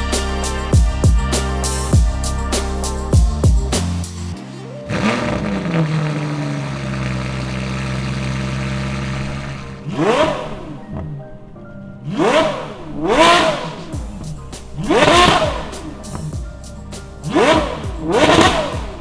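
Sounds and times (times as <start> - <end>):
car engine idling and revving: 0.8 - 10.6, 12.1 - 19.0.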